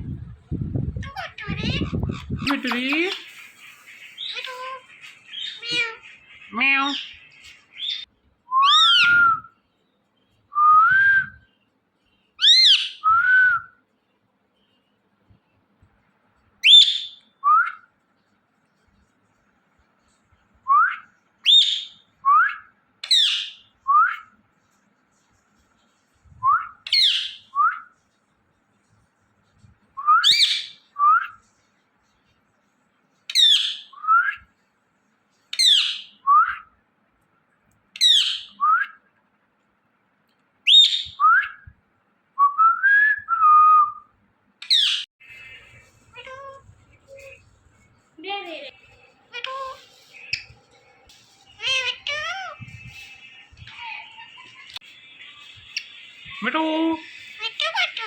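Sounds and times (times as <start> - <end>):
parrot whistled calls: 7.8 - 9.5, 12.4 - 13.7, 16.6 - 17.8, 26.5 - 27.9, 30.0 - 31.4, 40.6 - 41.7, 51.6 - 53.3.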